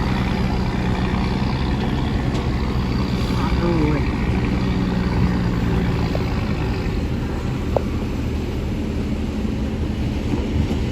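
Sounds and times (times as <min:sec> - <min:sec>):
heavy machinery diesel engine running: 0:00.0 - 0:10.9.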